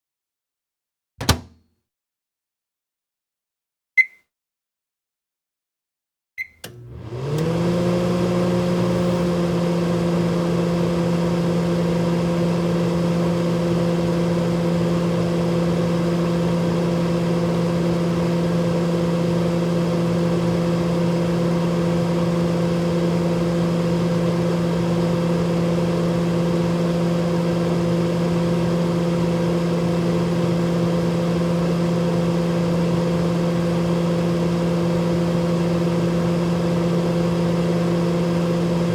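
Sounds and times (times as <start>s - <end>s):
microwave switch click: 1.2s - 1.7s, 6.4s - 7.5s
microwave oven humming: 6.4s - 38.9s.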